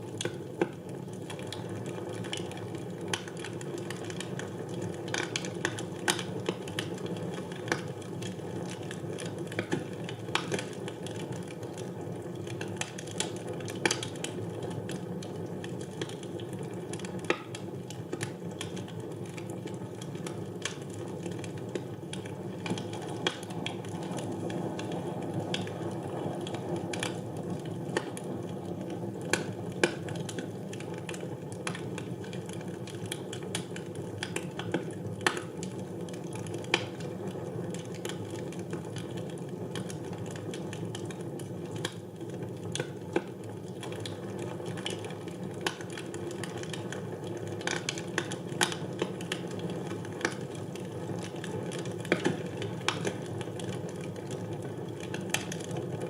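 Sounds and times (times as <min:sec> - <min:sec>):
fire crackling and popping: 0:00.0 - 0:56.0
low rush of flame: 0:21.7 - 0:30.6.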